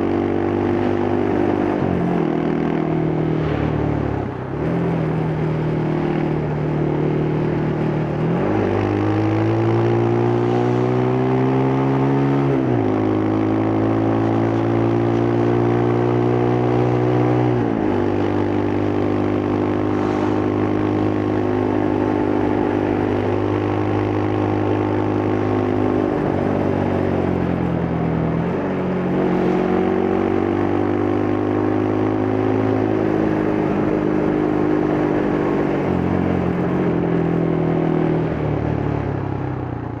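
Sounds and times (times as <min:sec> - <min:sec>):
motorcycle engine accelerating: 0:00.0 - 0:40.0.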